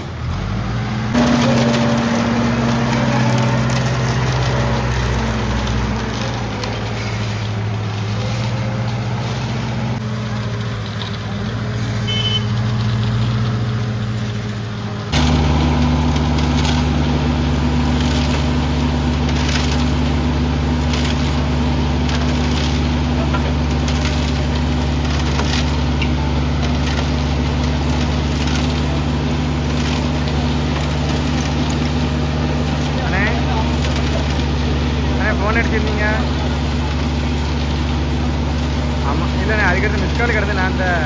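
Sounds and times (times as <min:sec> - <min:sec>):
concrete mixer diesel engine: 0:00.0 - 0:41.0
knocks and clatter: 0:15.2 - 0:41.0.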